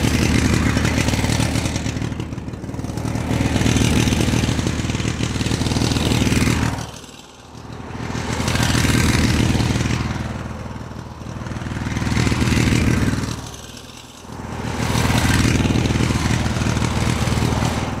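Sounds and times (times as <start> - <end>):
motorcycle engine revving: 0.0 - 18.0.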